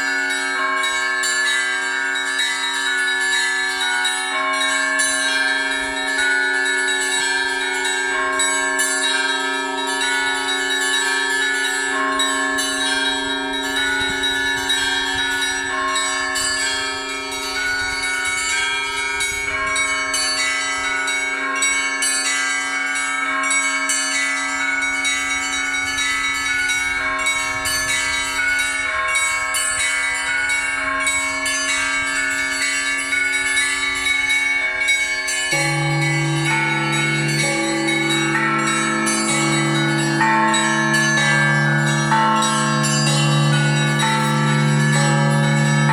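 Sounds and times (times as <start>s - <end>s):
church bells pealing: 0.0s - 45.9s
deep heavy bell: 0.0s - 45.9s.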